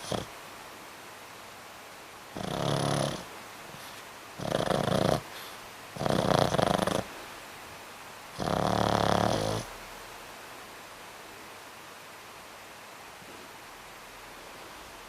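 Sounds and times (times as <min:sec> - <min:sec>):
dog snoring: 0:00.0 - 0:00.3, 0:02.3 - 0:07.1, 0:08.3 - 0:09.8.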